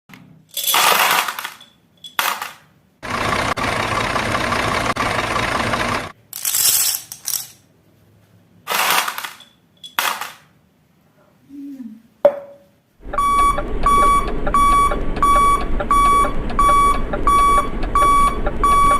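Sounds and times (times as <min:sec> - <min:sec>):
marbles rolling down plastic track: 0:00.5 - 0:01.6, 0:08.7 - 0:10.4.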